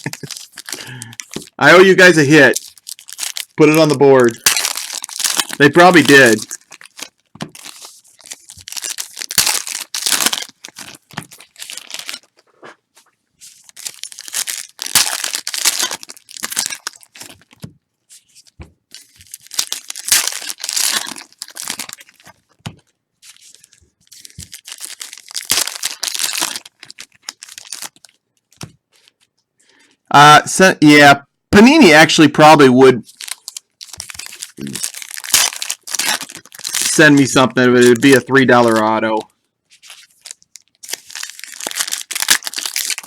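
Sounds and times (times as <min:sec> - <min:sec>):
card wrappers crinkling: 0:00.0 - 0:29.3, 0:33.0 - 0:43.0.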